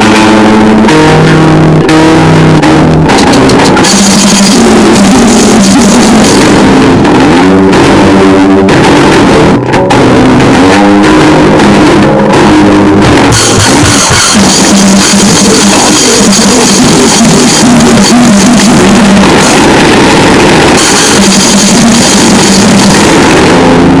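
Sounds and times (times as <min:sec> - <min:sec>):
distorted guitar: 0:00.0 - 0:24.0
pounding drums: 0:03.1 - 0:08.0, 0:13.0 - 0:23.6.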